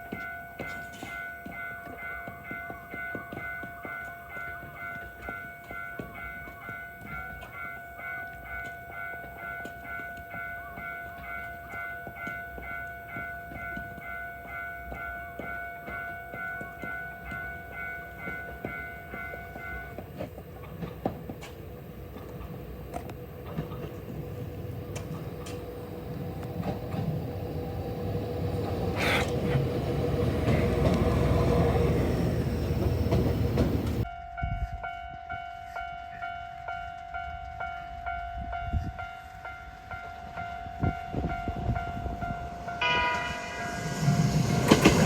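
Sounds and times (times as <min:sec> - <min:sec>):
railcar engine and wheel rumble: 0:00.0 - 0:45.0
level crossing bells dinging: 0:41.8 - 0:45.0.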